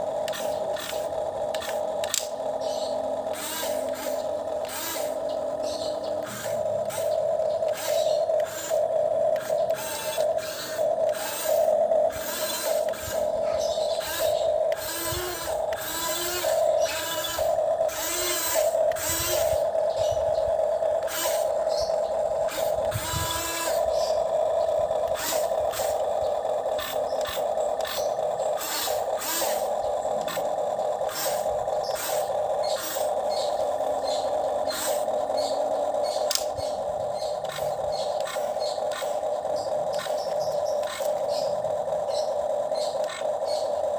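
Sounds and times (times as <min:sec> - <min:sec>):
small electric motor whirring: 0:00.0 - 0:43.6
clicks and scraping of parts: 0:00.2 - 0:02.3, 0:36.2 - 0:36.6, 0:37.4 - 0:39.2.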